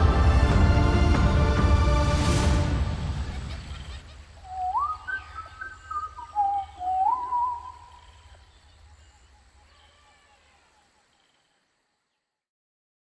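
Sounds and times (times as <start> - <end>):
trailer music: 0.0 - 3.5
whistled calls sliding up: 2.4 - 8.2.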